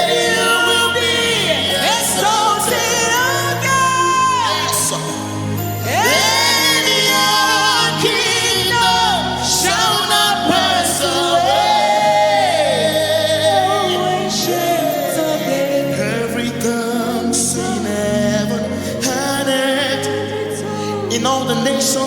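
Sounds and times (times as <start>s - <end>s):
gospel singing: 0.0s - 22.0s
sustained instrumental chords: 0.0s - 22.0s.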